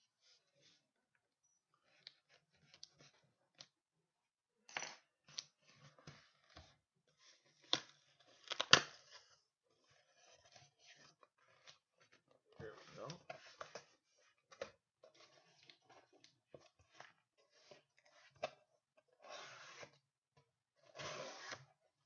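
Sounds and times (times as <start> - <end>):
blade slicing tape and cardboard: 21.0 - 21.7.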